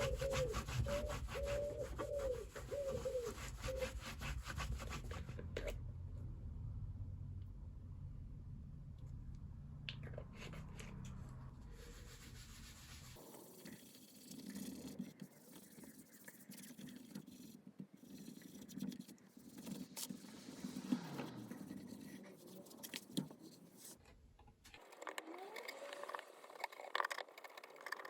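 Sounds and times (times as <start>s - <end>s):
scratchy rubbing on wood: 0.0s - 5.4s, 11.7s - 24.0s
back-and-forth strokes: 11.5s - 24.0s.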